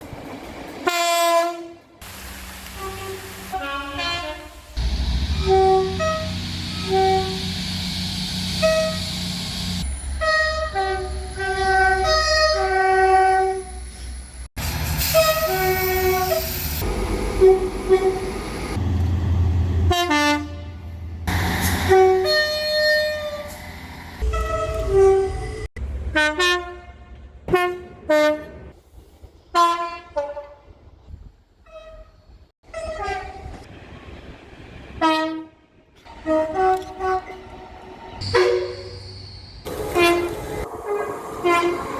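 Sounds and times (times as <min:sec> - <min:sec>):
low rumble of passing trains: 0:00.0 - 0:41.9
two-tone train horn blasts: 0:00.9 - 0:01.9, 0:02.6 - 0:07.7, 0:08.4 - 0:13.8, 0:15.1 - 0:18.5, 0:19.9 - 0:20.9, 0:24.2 - 0:28.6, 0:31.7 - 0:33.6, 0:35.0 - 0:37.4, 0:38.2 - 0:39.0, 0:39.7 - 0:41.9.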